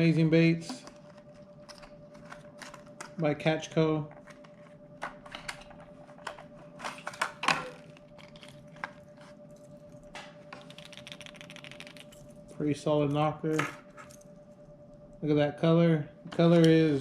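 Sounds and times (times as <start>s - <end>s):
plastic packaging crinkling: 6.9s - 9.8s.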